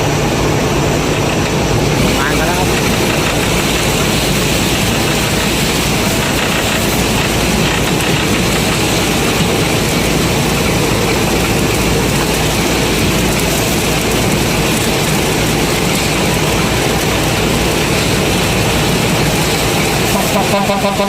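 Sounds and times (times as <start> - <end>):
combine harvester engine drone: 0.0 - 21.0.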